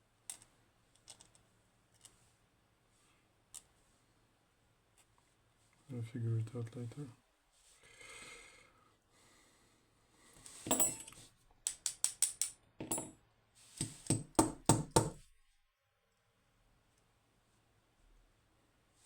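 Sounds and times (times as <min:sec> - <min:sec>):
metallic clicks and taps: 0:11.6 - 0:13.0.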